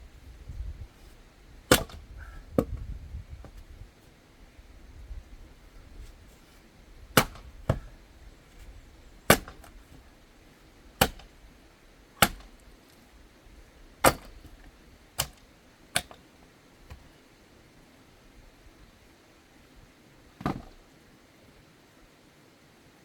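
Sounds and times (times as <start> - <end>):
axe splitting firewood: 0.9 - 3.7, 5.6 - 11.6, 12.2 - 12.7, 14.0 - 16.2, 20.4 - 20.8.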